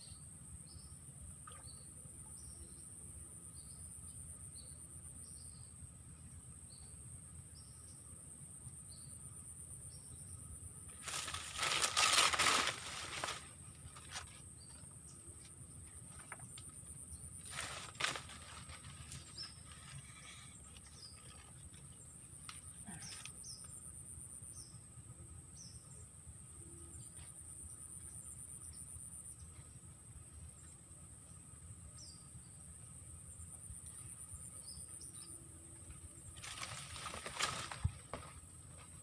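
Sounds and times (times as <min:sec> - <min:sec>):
insects buzzing: 0:00.0 - 0:39.0
loud rustling: 0:11.0 - 0:14.4, 0:17.4 - 0:21.8.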